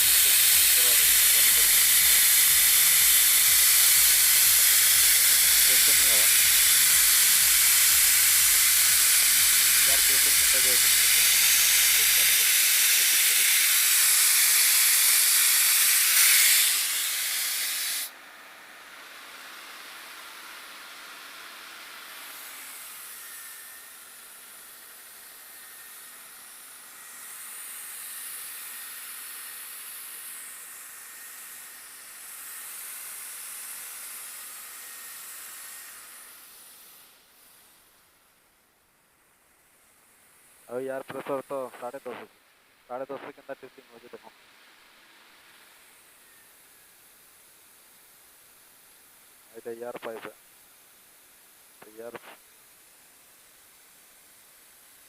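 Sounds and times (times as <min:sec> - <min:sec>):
compressed air hissing: 0:00.0 - 0:18.1.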